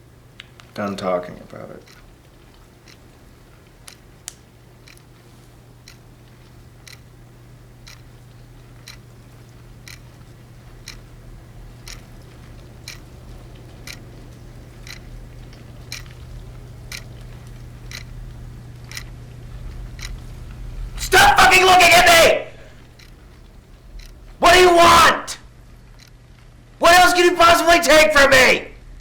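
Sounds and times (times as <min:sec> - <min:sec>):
low steady hum: 0:00.0 - 0:29.0
sharp regular ticks: 0:00.3 - 0:00.8, 0:01.5 - 0:21.1, 0:22.7 - 0:24.4, 0:25.6 - 0:26.6.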